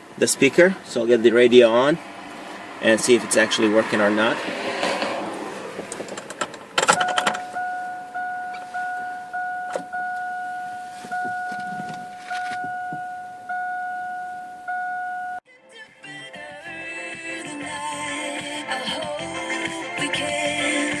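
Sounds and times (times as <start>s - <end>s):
keys rattling in ignition: 5.9s - 13.6s
dashboard warning chime dinging: 6.8s - 15.4s.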